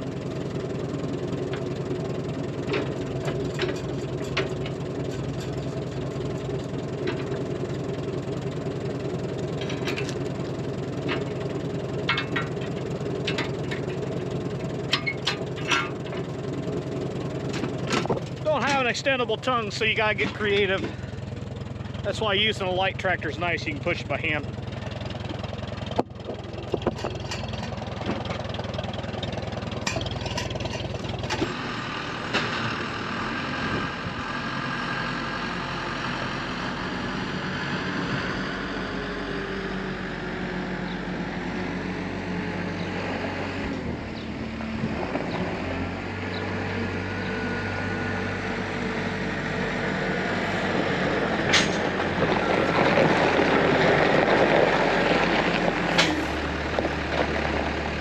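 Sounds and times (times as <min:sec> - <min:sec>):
tractor engine running: 0:00.0 - 0:58.0
sharp metal clanks: 0:12.0 - 0:14.0, 0:14.9 - 0:16.3, 0:26.7 - 0:28.4, 0:29.8 - 0:31.5, 0:51.4 - 0:52.0, 0:55.9 - 0:56.4.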